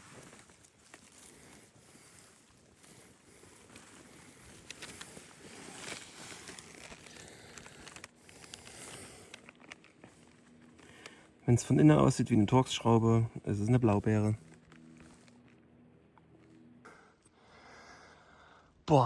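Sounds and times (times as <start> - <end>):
rustling in forest undergrowth: 0.0 - 16.8
twigs snapping: 0.2 - 2.0, 2.8 - 11.4, 13.7 - 16.6.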